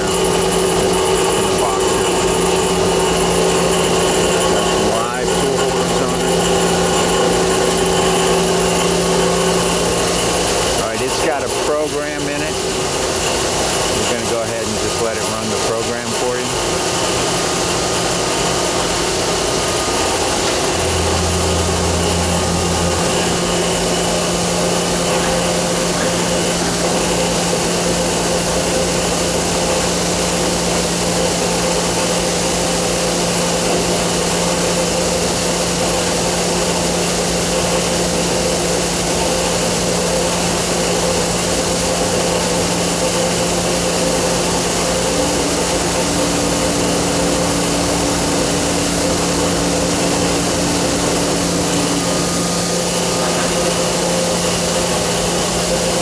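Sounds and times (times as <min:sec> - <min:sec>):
deep machine hum: 0:00.0 - 0:56.0
machine whirring and hissing: 0:00.0 - 0:56.0.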